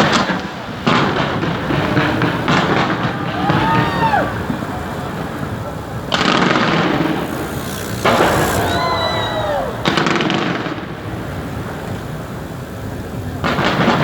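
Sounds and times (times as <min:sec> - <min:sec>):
fireworks crackling hiss: 0:04.4 - 0:12.3
fireworks whistle: 0:06.3 - 0:10.9.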